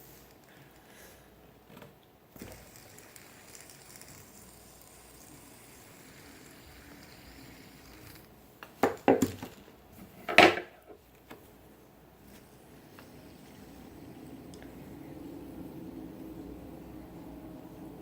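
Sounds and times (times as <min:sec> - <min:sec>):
faint room noise: 0:00.0 - 0:18.0
fidget spinners clacking: 0:02.4 - 0:08.3.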